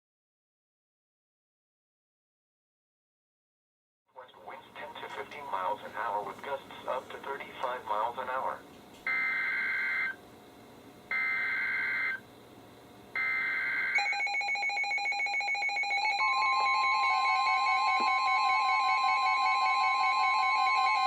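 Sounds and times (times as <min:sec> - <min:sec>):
rapid pulsing alarm beeps: 0:09.1 - 0:10.2, 0:11.1 - 0:12.2, 0:13.2 - 0:21.0
steady warning alarm tone: 0:09.1 - 0:10.2, 0:11.1 - 0:12.3, 0:13.1 - 0:21.0.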